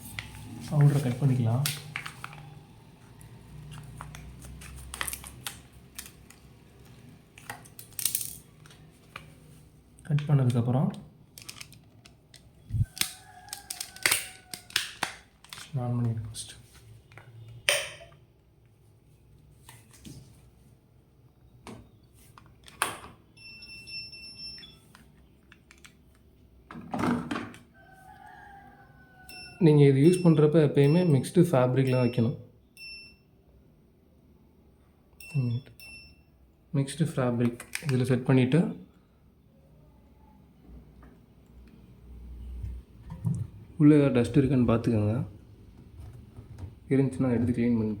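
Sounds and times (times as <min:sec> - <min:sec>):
packet crinkling: 0:00.1 - 0:02.6, 0:03.6 - 0:09.2, 0:11.3 - 0:16.3.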